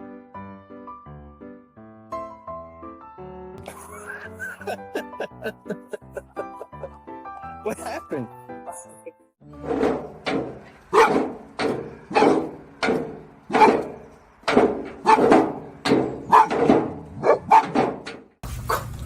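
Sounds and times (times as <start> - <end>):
dog barking with echo: 10.9 - 11.2, 12.1 - 12.5, 15.0 - 15.3, 16.3 - 16.6, 17.2 - 17.8.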